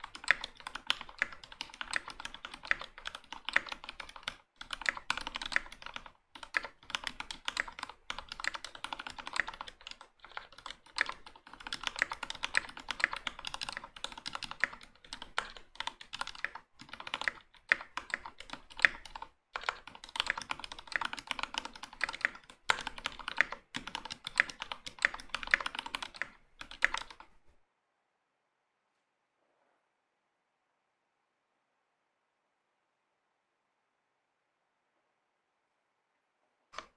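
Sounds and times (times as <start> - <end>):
mechanical keyboard typing: 0.0 - 27.4.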